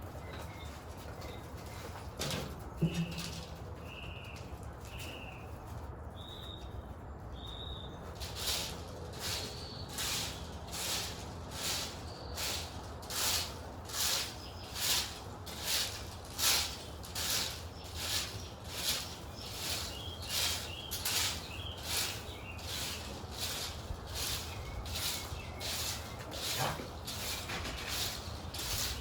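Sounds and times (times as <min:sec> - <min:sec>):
bird chirping: 0:02.8 - 0:08.1, 0:17.6 - 0:23.5.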